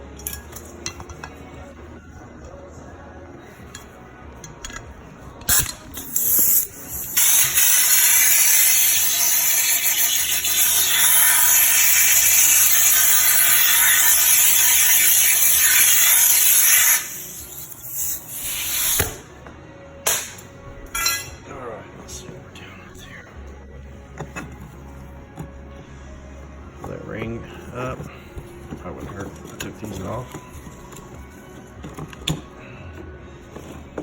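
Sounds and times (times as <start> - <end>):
compressed air blow gun hissing: 5.5 - 19.2.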